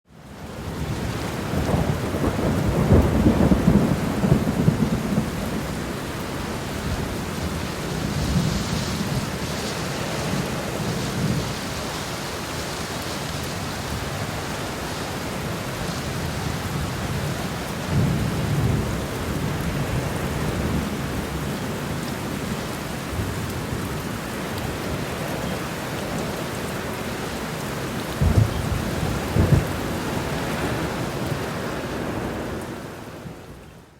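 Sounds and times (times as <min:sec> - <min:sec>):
heavy rain falling: 0:00.1 - 0:33.9
thunder rumbling: 0:00.7 - 0:12.5, 0:13.5 - 0:25.5, 0:28.0 - 0:33.3
sharp thunderclaps: 0:28.2 - 0:30.0.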